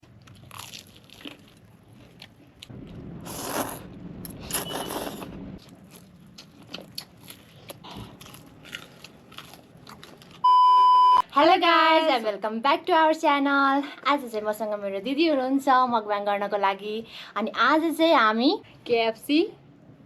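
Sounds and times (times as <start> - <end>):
crunchy chewing of food: 0.0 - 10.5.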